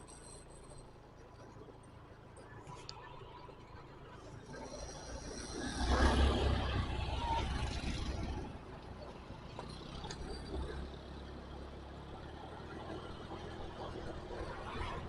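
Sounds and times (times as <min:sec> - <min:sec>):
quiet steady rumble: 0:00.0 - 0:15.0
vehicle passing close by: 0:05.4 - 0:08.7.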